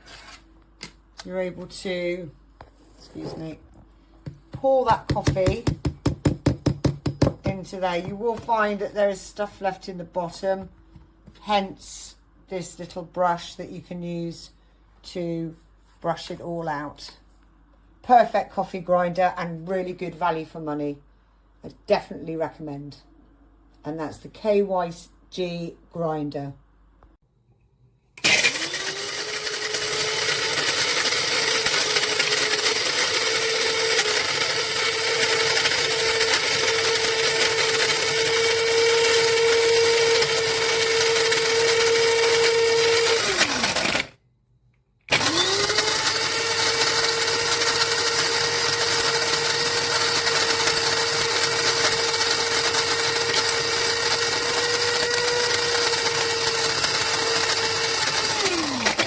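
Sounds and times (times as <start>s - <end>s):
coffee grinder motor whine: 28.2s - 44.1s, 45.1s - 59.0s.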